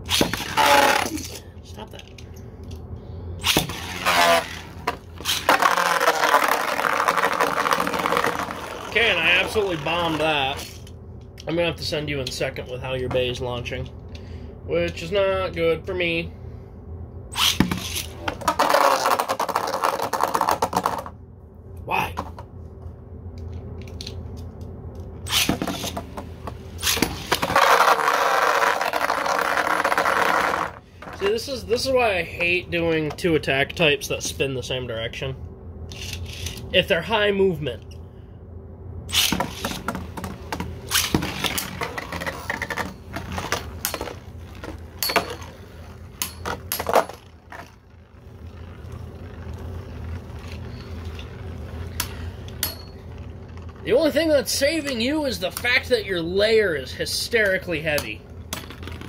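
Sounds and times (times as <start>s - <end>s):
spinning tops humming: 2.1s - 12.0s, 39.0s - 59.0s.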